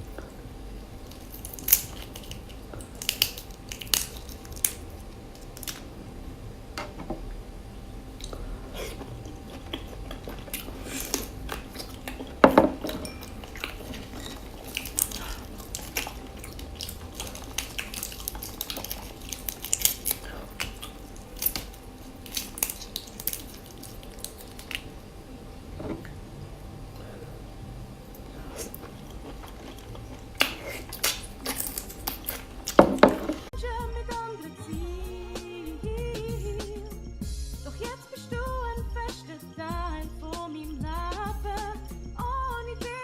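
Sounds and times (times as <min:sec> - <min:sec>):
dishes and utensils clattering: 0:08.9 - 0:15.2, 0:32.7 - 0:33.5.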